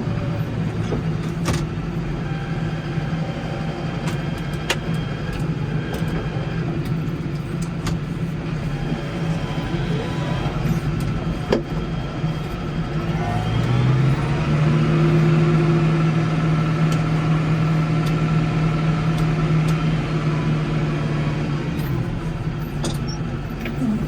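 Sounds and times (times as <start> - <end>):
garden tractor engine revving: 8.6 - 11.6.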